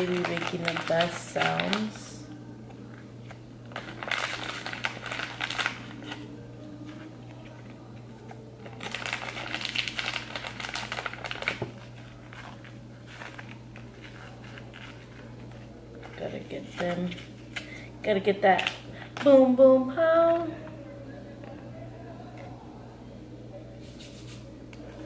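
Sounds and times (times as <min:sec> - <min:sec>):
crunchy slime crackling: 0:03.7 - 0:06.3, 0:08.6 - 0:15.4.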